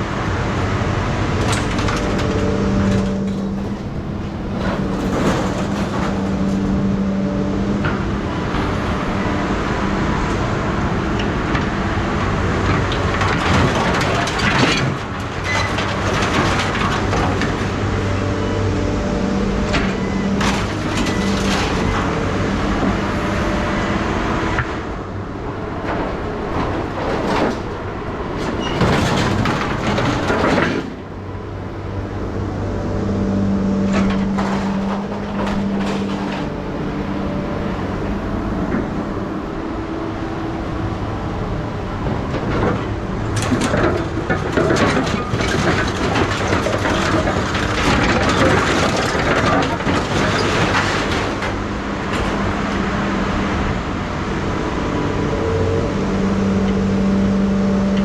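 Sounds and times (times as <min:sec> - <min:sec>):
metallic rattling and clanking: 0:01.3 - 0:07.1, 0:25.8 - 0:31.3, 0:33.7 - 0:38.0, 0:40.9 - 0:52.9.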